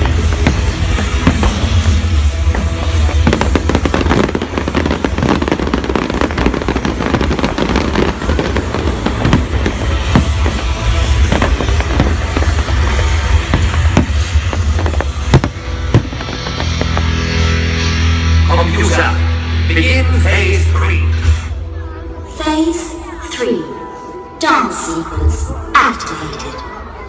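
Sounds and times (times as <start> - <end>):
fireworks bangs and crackles: 0.0 - 21.6
loud music: 0.0 - 23.5.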